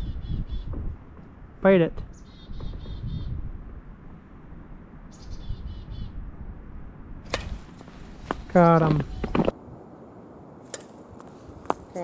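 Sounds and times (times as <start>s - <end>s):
low rumble of wind: 0.0s - 12.0s
small bird calling: 2.1s - 3.4s, 5.1s - 6.2s.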